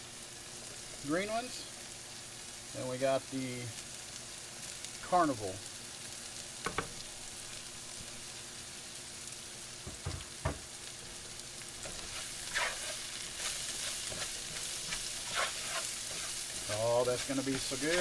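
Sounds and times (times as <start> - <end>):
vegetables sizzling in a skillet: 0.0 - 18.0
utensil scraping a pan: 11.8 - 18.0.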